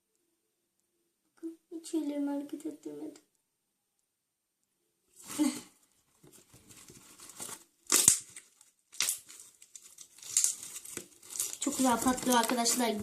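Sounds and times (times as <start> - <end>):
slime crackling: 7.4 - 13.0.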